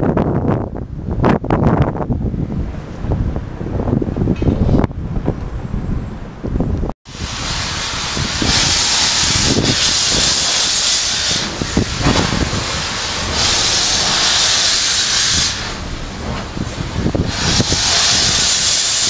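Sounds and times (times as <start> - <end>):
steam locomotive hissing steam: 7.1 - 19.0.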